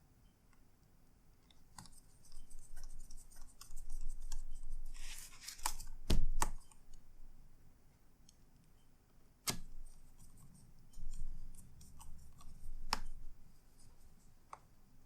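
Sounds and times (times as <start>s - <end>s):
light clicks of laptop parts: 1.4s - 7.0s.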